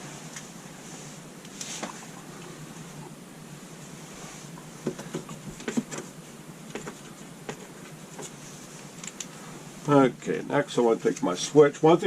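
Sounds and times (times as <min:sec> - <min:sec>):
faint background noise: 0:00.0 - 0:12.0
small parts clicking and tapping: 0:09.0 - 0:09.4.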